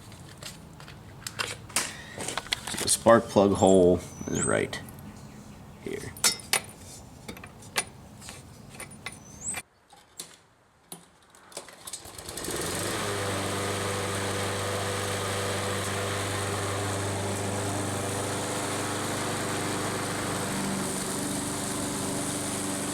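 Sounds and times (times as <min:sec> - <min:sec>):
lawn mower engine running: 0:12.0 - 0:22.9.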